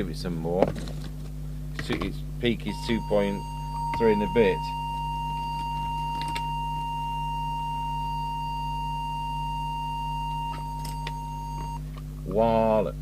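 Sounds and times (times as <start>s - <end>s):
low mains hum: 0.0s - 13.0s
steady pure test tone: 1.8s - 11.8s.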